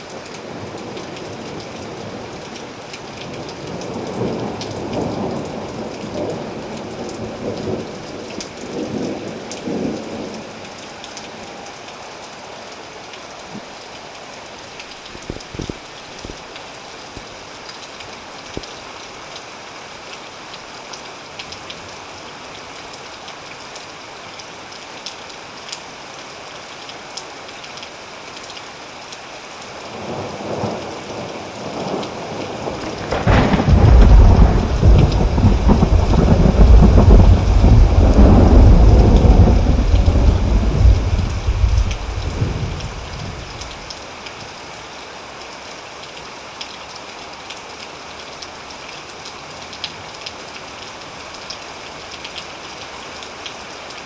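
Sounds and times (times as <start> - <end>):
steady rain falling: 0.0 - 54.0
thunder rumbling and cracking: 30.0 - 43.9.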